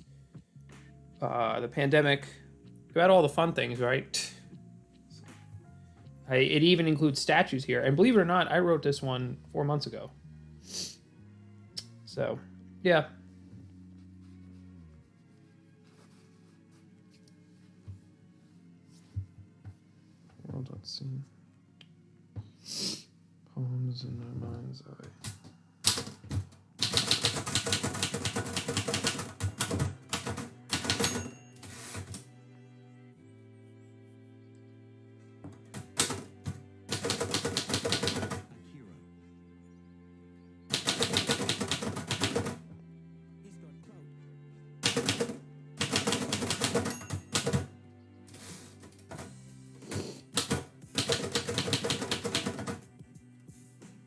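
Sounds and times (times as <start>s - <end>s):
quiet background music: 0.0s - 54.0s
typewriter keys striking: 25.9s - 32.2s, 35.8s - 38.4s, 40.7s - 42.6s, 44.8s - 47.7s, 50.4s - 52.8s.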